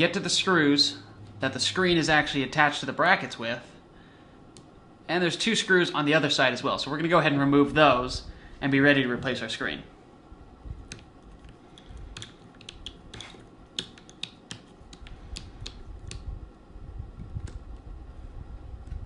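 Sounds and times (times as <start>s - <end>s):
low handling rumble: 0.4s - 2.8s.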